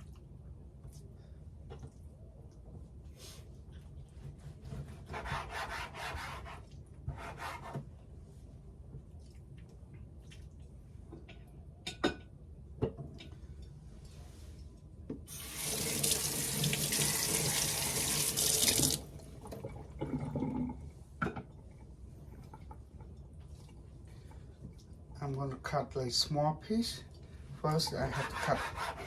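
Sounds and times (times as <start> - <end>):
kitchen tap running: 15.3 - 20.3.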